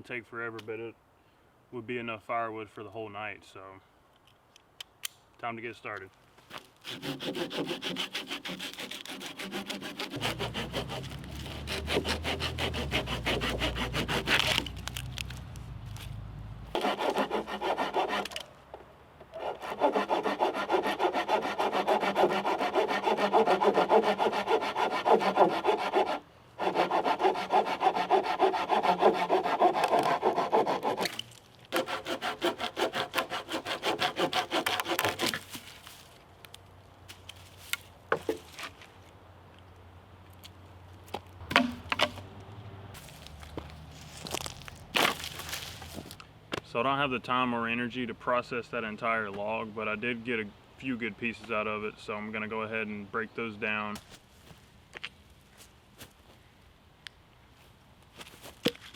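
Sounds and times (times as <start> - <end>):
hand saw cutting log: 6.5 - 15.0, 16.7 - 18.5, 19.3 - 35.8, 41.5 - 42.2, 44.1 - 46.2.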